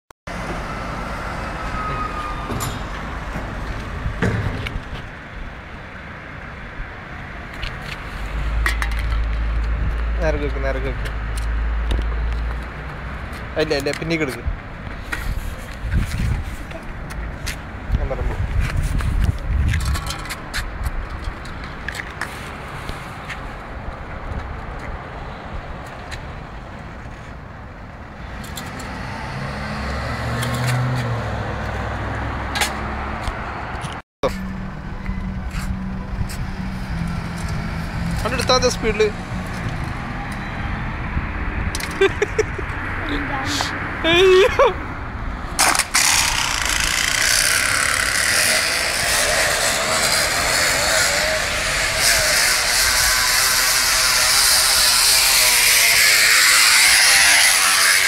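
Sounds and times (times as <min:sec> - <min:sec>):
outdoor background noise: 0:00.3 - 0:58.0
bicycle engine-like noise: 0:45.5 - 0:58.0.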